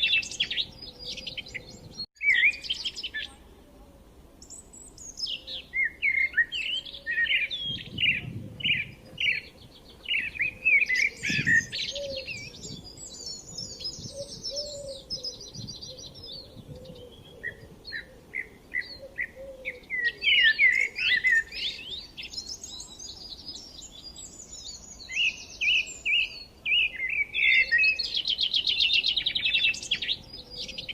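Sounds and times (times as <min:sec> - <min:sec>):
songbirds chirping and trilling: 0:00.0 - 0:30.9.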